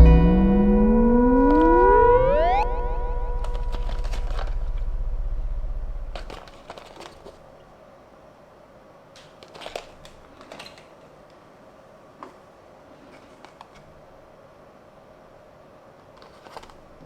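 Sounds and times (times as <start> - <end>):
background music: 0.0 - 5.5
small objects clicking and rustling: 6.2 - 7.4, 9.2 - 11.0, 16.2 - 16.8.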